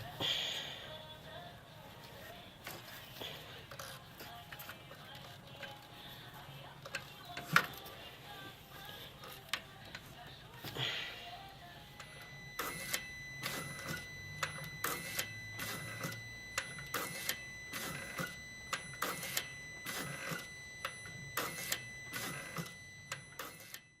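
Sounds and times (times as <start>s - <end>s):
steady high-pitched tone: 10.8s - 24.0s.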